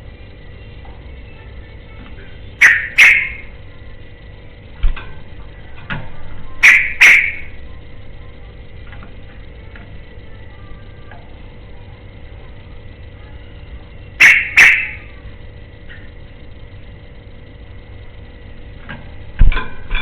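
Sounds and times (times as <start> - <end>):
steady background hum: 0.0 - 20.0
bird giving sharp calls: 2.6 - 3.5, 6.6 - 7.5, 14.2 - 15.0.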